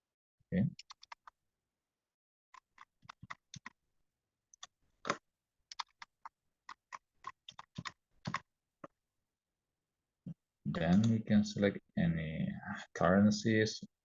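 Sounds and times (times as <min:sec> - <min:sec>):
keyboard typing clicks: 0:00.8 - 0:01.3, 0:06.7 - 0:08.4, 0:10.9 - 0:11.2.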